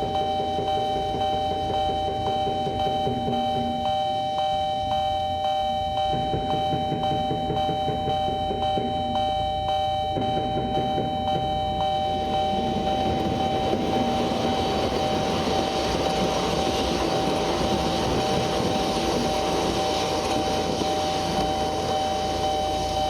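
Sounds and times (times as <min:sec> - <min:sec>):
level crossing warning bell: 0:00.0 - 0:23.0
train rolling rumble: 0:10.2 - 0:23.0.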